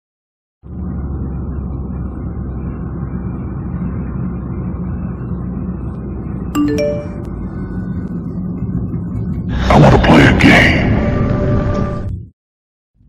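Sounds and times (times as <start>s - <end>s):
dark low rumbling drone: 0.6s - 12.3s
rising chime notes: 6.6s - 7.4s.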